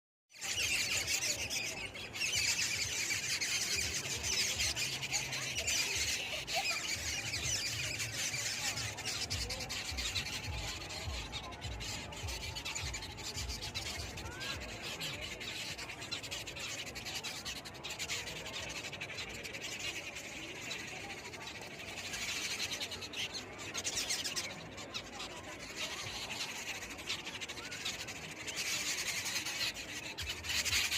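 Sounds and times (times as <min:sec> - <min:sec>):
flock of small birds chirping: 0:00.3 - 0:30.9.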